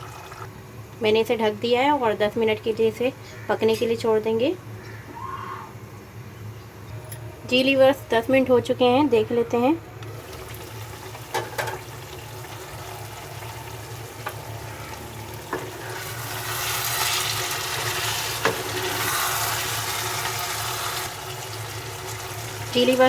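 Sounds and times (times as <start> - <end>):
curry sizzling in pan: 10.1 - 23.0.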